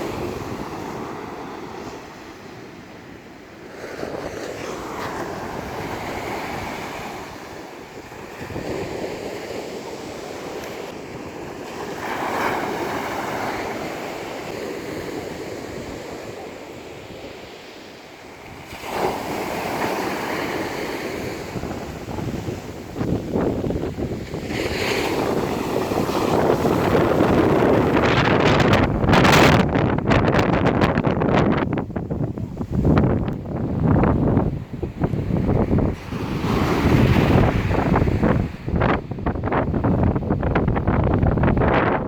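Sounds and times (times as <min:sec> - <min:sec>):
wind buffeting microphone: 0:03.8 - 0:17.3, 0:18.5 - 0:42.0
heavy surf breaking: 0:18.5 - 0:42.0.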